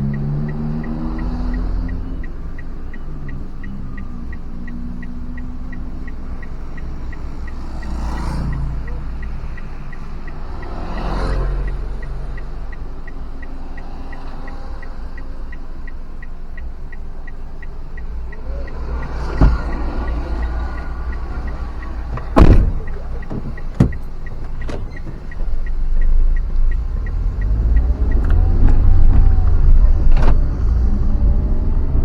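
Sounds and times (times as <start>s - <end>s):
fast even ticking: 0.0s - 30.1s
car engine and road rumble: 0.0s - 32.0s
vehicles passing: 0.0s - 32.0s
sharp thump: 19.2s - 20.2s, 22.1s - 25.1s.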